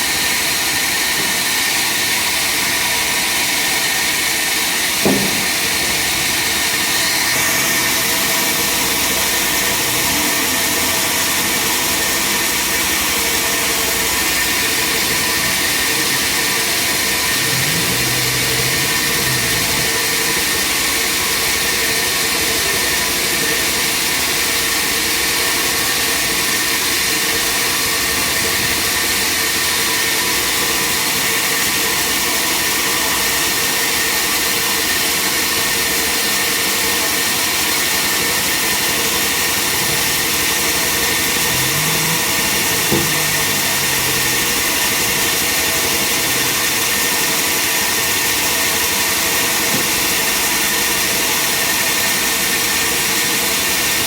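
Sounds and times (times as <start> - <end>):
sawmill machinery running: 0.0 - 54.0
brief knock: 5.0 - 5.6.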